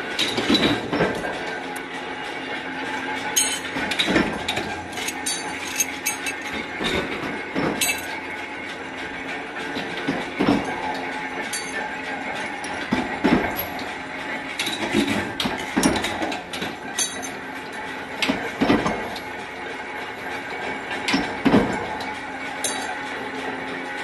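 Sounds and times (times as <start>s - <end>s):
steady mechanical hum: 0.0s - 24.0s
metallic knocks and clatter: 3.4s - 8.3s, 9.8s - 14.0s, 14.6s - 17.4s, 22.6s - 23.1s.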